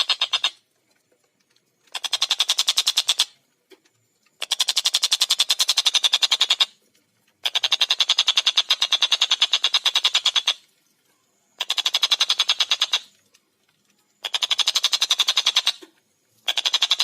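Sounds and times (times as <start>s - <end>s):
kingfisher chattering rattle: 0.0s - 0.6s, 1.8s - 3.4s, 4.4s - 6.8s, 7.4s - 10.7s, 11.5s - 13.2s, 14.2s - 17.0s.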